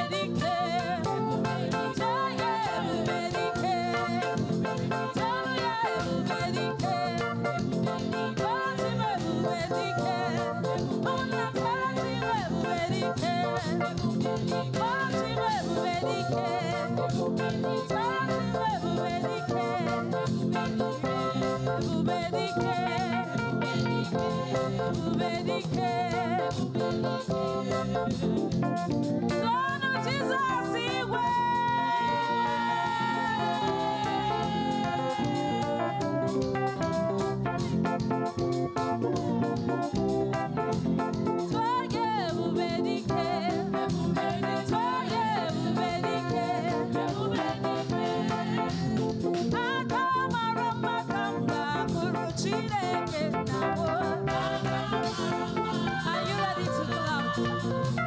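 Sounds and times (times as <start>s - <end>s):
band with guitar and drums: 0.0s - 58.0s
person singing: 0.0s - 58.0s.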